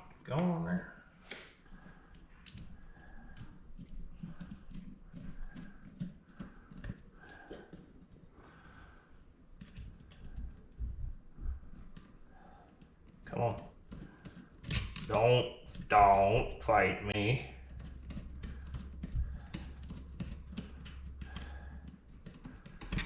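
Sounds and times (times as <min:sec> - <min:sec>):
rubbing of parts: 0:01.0 - 0:11.0, 0:11.6 - 0:16.2, 0:17.4 - 0:23.0
small clicks and taps: 0:09.6 - 0:11.0, 0:11.7 - 0:15.9, 0:17.6 - 0:23.0.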